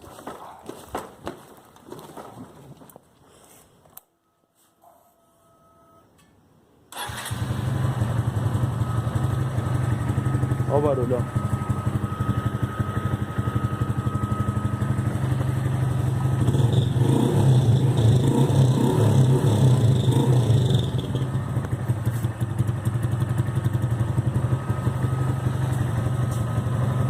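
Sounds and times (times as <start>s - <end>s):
motorcycle engine idling: 7.6s - 27.0s.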